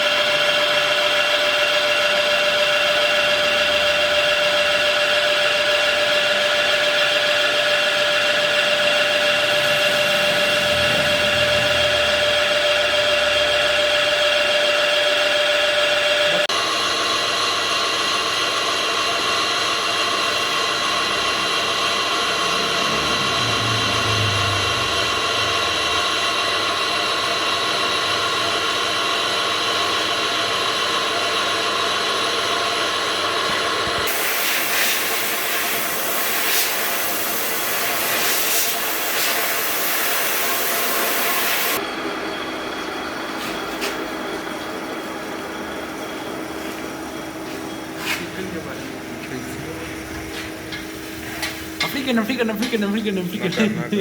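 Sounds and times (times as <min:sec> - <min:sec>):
lathe whine: 0:00.0 - 0:54.0
loud hiss: 0:34.0 - 0:41.8.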